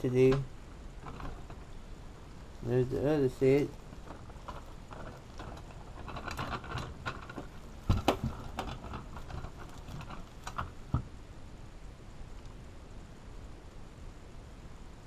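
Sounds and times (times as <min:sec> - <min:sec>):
plastic packaging handled: 0:01.0 - 0:11.1
hand tools clicking and knocking: 0:02.8 - 0:11.1.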